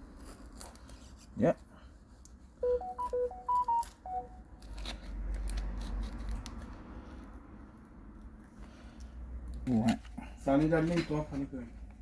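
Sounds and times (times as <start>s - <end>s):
electronic melody of beeps: 2.6s - 4.4s.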